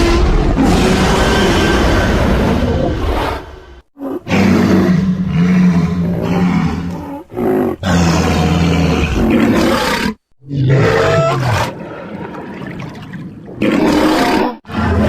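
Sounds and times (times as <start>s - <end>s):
monster roars: 0.0s - 11.7s.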